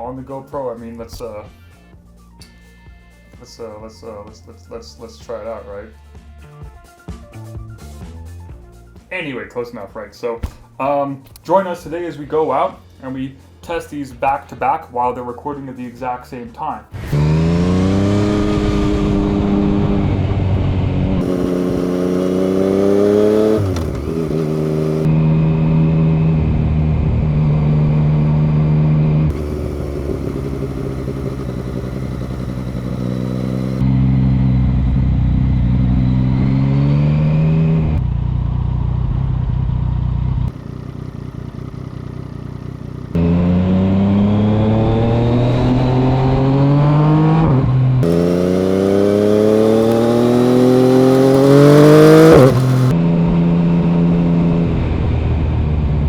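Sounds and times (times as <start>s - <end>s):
motorcycle engine accelerating: 17.0s - 56.0s.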